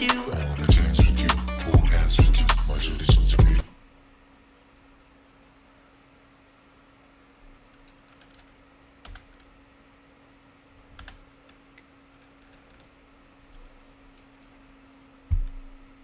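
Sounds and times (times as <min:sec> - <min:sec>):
steady low hum: 0:00.0 - 0:07.7
computer keys clicking: 0:07.8 - 0:09.5, 0:10.9 - 0:11.2.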